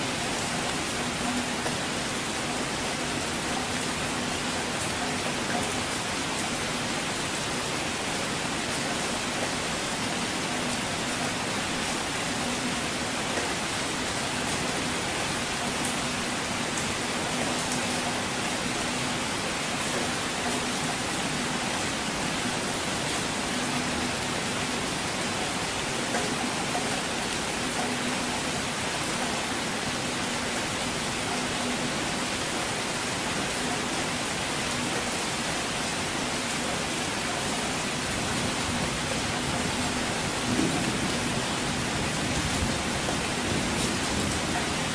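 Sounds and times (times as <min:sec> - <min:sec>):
rain falling: 0:00.0 - 0:44.9.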